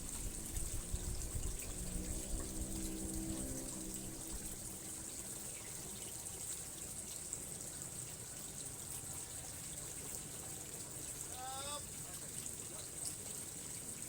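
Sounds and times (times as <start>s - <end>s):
faint pitched hum: 0.0s - 7.8s
running water: 0.0s - 14.0s.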